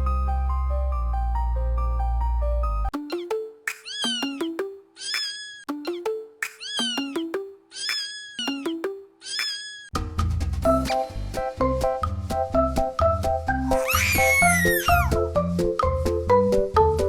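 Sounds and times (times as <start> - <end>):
cat meows: 3.8 - 4.4, 6.6 - 7.1, 7.8 - 8.6, 9.2 - 9.9, 13.8 - 15.1.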